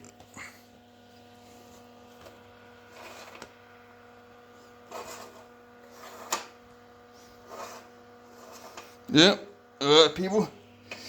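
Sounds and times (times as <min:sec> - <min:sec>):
projector motor hum: 0:00.0 - 0:11.0.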